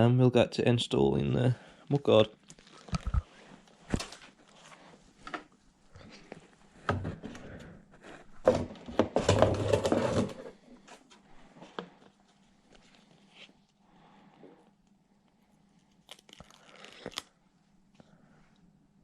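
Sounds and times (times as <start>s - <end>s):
crinkling rustle: 2.4s - 5.0s.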